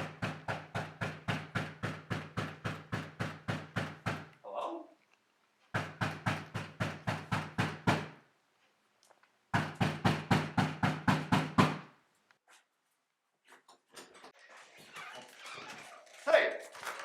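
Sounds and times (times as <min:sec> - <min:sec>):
rapid knocking on a door: 0:00.0 - 0:04.3, 0:05.8 - 0:08.2, 0:09.5 - 0:11.9.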